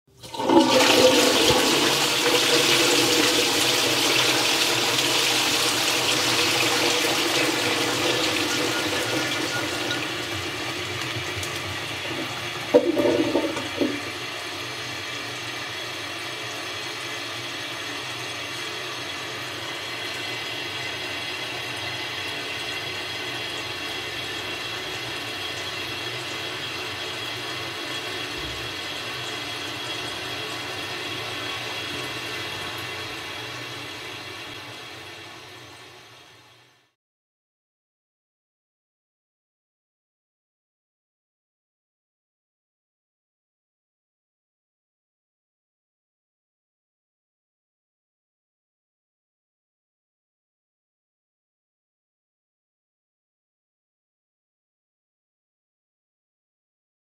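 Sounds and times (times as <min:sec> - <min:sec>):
toilet flushing: 0:00.1 - 0:36.8
water running as tank refills: 0:00.1 - 0:36.9.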